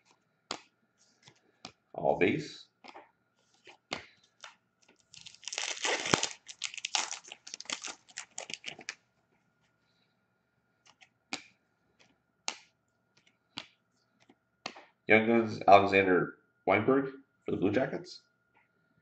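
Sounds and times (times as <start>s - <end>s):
wrapper tearing and crinkling: 5.0s - 9.0s.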